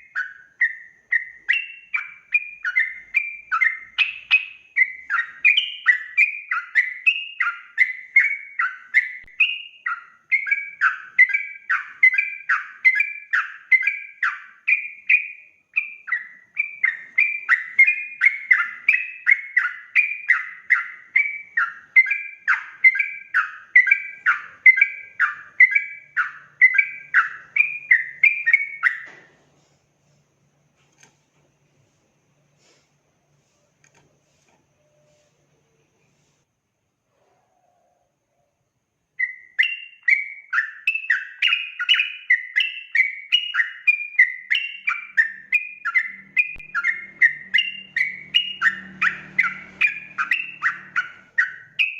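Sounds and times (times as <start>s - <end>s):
bird singing short falling notes: 39.2s - 51.9s.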